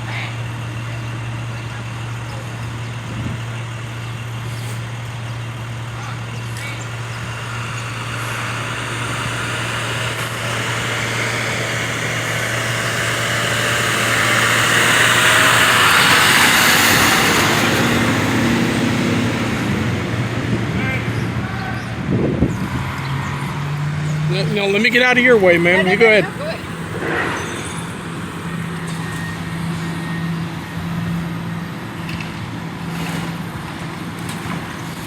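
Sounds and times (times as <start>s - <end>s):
steady low engine hum: 0.0s - 35.0s
vehicle passing close by: 6.9s - 32.1s.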